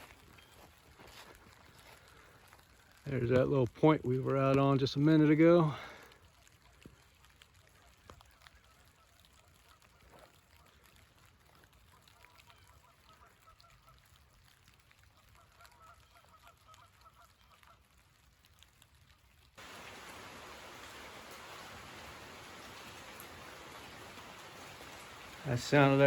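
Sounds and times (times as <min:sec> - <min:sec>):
rain on a tin roof: 0:00.0 - 0:26.0
distant bird calls: 0:19.6 - 0:26.0.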